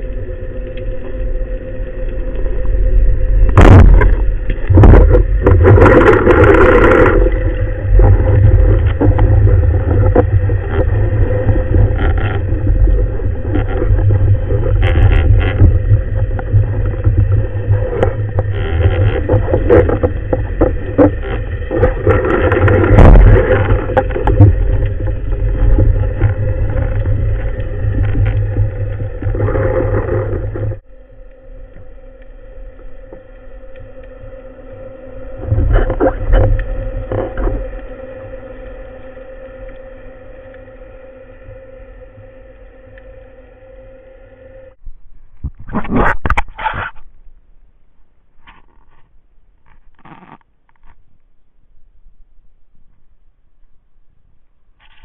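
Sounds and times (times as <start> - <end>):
motorboat engine rumbling: 0.0 - 47.2.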